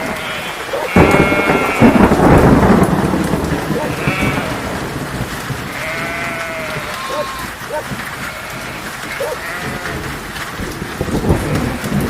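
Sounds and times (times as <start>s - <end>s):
sheep bleating: 0.0s - 2.2s, 3.8s - 4.8s, 5.7s - 10.2s, 11.3s - 12.0s
steady rain: 0.0s - 12.0s
thunderclap rumbling: 0.0s - 12.0s.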